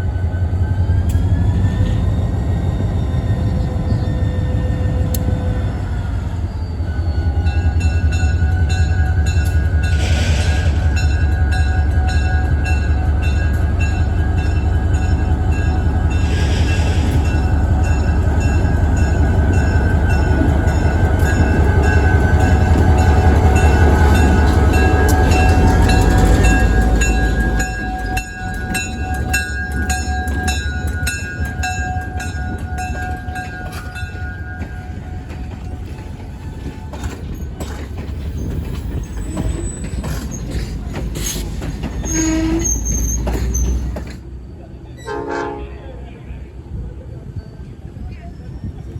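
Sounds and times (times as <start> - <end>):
train rumbling past: 0.0 - 48.9
wheels clicking over rail joints: 17.9 - 44.2.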